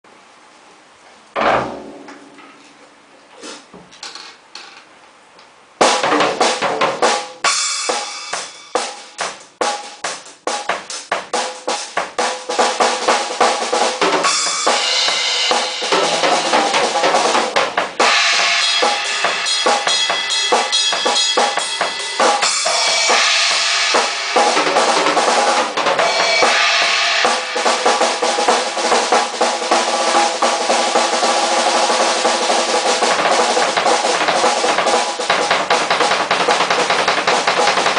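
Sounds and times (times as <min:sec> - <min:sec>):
drum kit played fast: 0:05.8 - 0:37.9.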